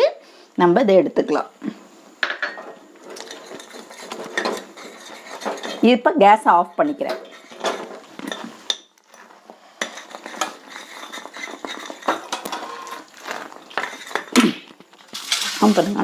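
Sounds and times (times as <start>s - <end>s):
spoon stirring thick syrup: 3.0s - 5.9s, 6.8s - 15.8s.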